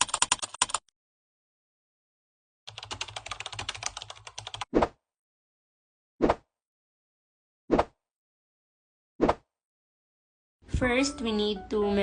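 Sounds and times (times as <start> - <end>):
keyboard typing clicks: 0.0 - 0.9, 2.7 - 4.7.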